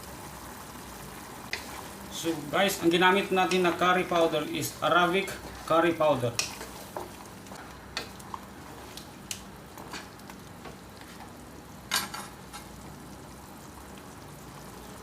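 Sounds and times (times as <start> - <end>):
utensil clicking against pan: 6.3 - 6.7.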